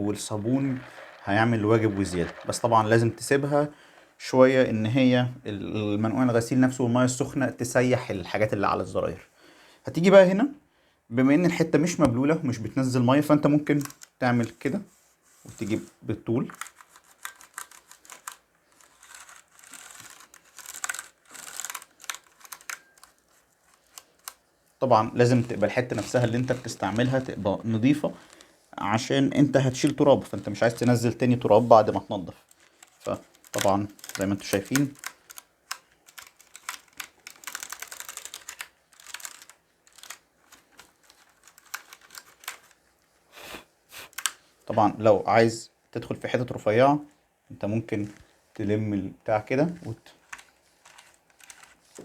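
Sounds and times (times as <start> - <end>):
small clicks and rattles: 0.0 - 5.0, 16.5 - 24.4, 32.4 - 43.1, 50.0 - 52.0
cloth wiping keyboard switches: 49.8 - 52.0.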